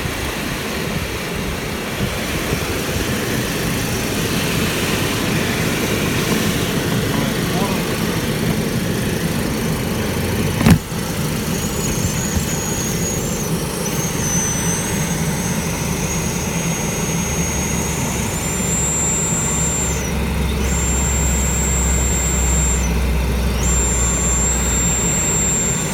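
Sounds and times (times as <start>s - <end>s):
heater airflow rushing: 0.2s - 25.9s
high-pitched whistle from air duct: 11.4s - 25.9s
click: 11.6s - 25.9s.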